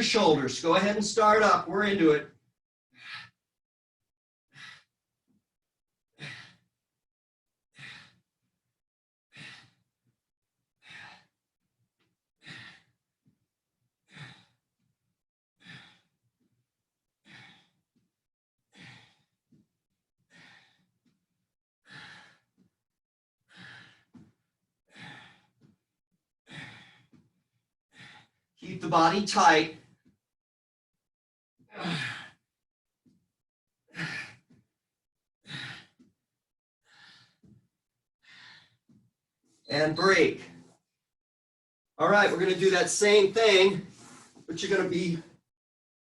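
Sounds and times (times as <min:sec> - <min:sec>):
heavy exhaled breaths: 0:03.0 - 0:03.4, 0:07.8 - 0:08.2, 0:09.3 - 0:09.8, 0:10.8 - 0:11.4, 0:12.4 - 0:13.0, 0:14.1 - 0:14.6, 0:15.6 - 0:16.2, 0:17.2 - 0:17.8, 0:18.7 - 0:19.6, 0:20.3 - 0:21.0, 0:21.8 - 0:22.7, 0:23.5 - 0:25.8, 0:26.5 - 0:27.3, 0:27.9 - 0:28.4, 0:31.7 - 0:32.4, 0:35.4 - 0:36.1, 0:36.9 - 0:37.6, 0:38.2 - 0:39.0.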